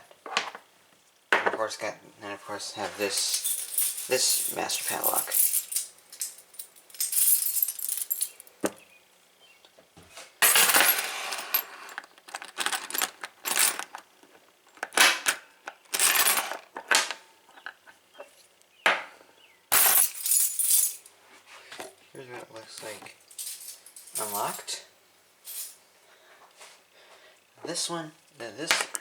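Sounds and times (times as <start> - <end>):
keys jangling: 3.0 - 8.6, 10.4 - 14.1, 16.0 - 16.7, 19.7 - 21.1, 23.2 - 24.7, 25.5 - 25.8.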